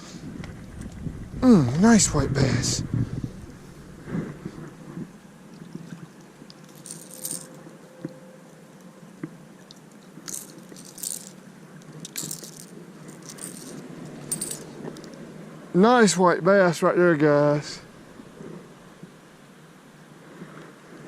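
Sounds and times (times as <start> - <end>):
fishing lure rattling: 6.5 - 7.7, 10.2 - 15.2
hooks clinking: 6.5 - 7.7, 10.2 - 15.2.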